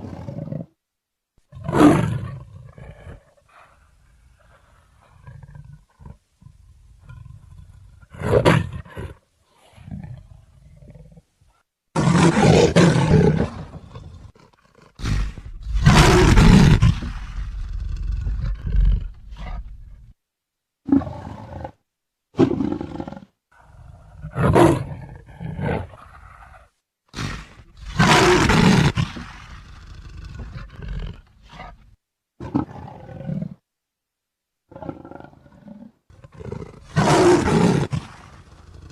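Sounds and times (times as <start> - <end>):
leopard roaring: 12.0 - 20.1, 22.4 - 31.8, 34.7 - 38.9.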